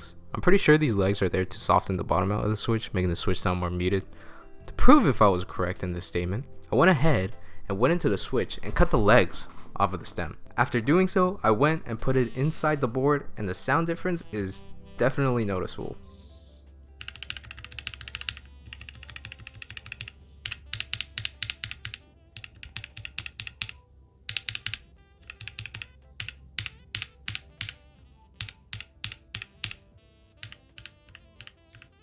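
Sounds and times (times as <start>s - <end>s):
background music: 0.0s - 32.0s
mechanical keyboard typing: 17.0s - 27.8s, 28.4s - 29.8s, 30.4s - 32.0s.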